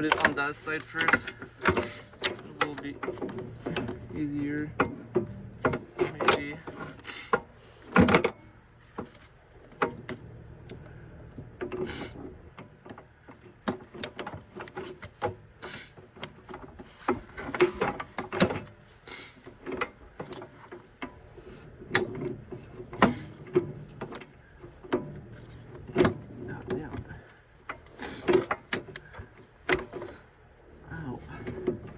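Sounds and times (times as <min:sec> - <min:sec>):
metallic knocks and clanks: 0:00.0 - 0:30.4.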